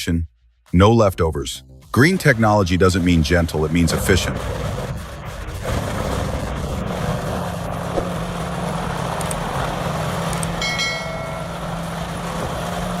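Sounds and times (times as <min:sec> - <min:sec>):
heavy grinder machine drone: 0:02.1 - 0:13.0
high whine: 0:06.4 - 0:13.0.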